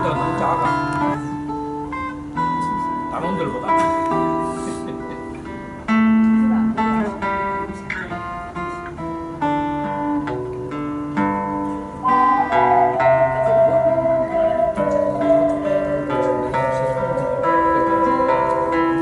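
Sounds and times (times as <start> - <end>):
acoustic guitar playing chords: 0.0 - 19.0
wavering high melody note: 12.0 - 19.0.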